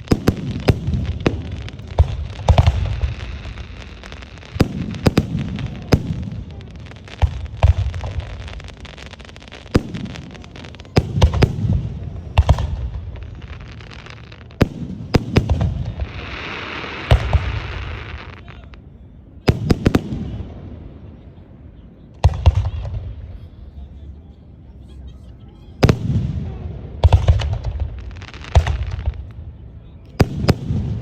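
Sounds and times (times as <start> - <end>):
hissing crackle: 0.0 - 18.8.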